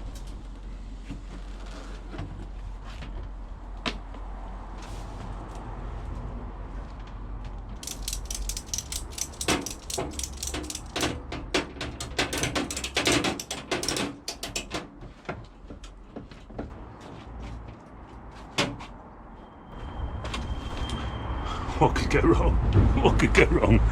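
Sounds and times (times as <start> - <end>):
ratchet clicking: 7.8 - 14.9.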